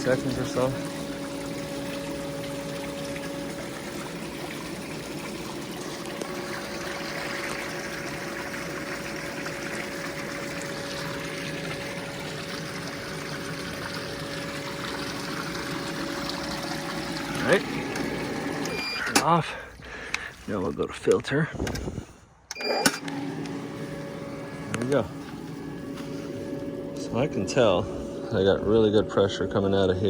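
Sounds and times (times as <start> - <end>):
pump humming: 0.0 - 20.8, 21.6 - 30.0
water flowing and trickling: 0.0 - 20.8.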